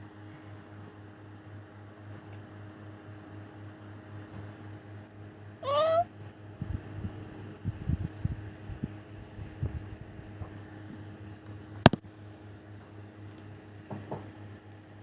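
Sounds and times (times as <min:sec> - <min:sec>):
steady low hum: 0:00.0 - 0:15.0
kitten mewing: 0:05.6 - 0:06.1.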